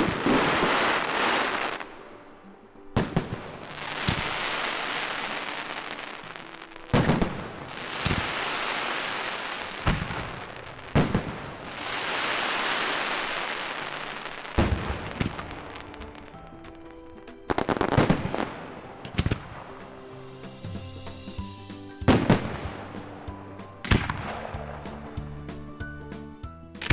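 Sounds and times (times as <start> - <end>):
fireworks bangs: 0.0 - 2.0, 3.0 - 16.5, 17.4 - 19.9, 22.1 - 25.1
fireworks crackling hiss: 0.0 - 26.9.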